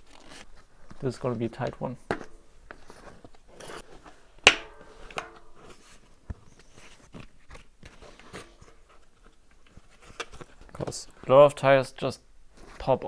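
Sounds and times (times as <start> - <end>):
rubber scraping on bicycle rim: 2.0 - 6.0
tire snapping onto rim: 4.5 - 5.8.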